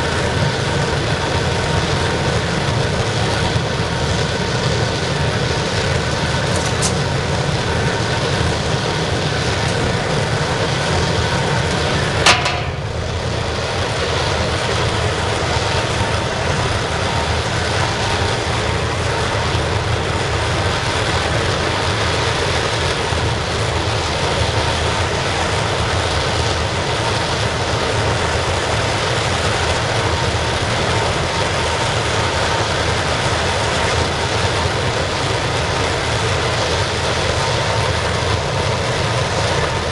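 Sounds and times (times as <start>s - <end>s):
burner flame roaring: 0.0s - 39.9s
sharp knock: 12.2s - 13.0s.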